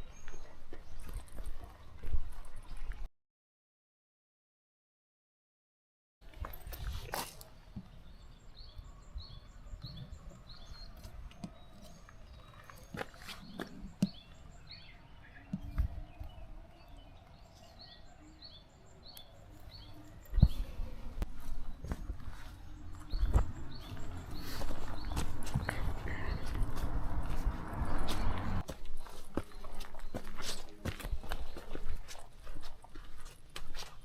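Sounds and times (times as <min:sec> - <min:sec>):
footsteps on a trail: 0:00.0 - 0:03.1, 0:06.2 - 0:08.2, 0:10.5 - 0:16.4, 0:19.6 - 0:34.0.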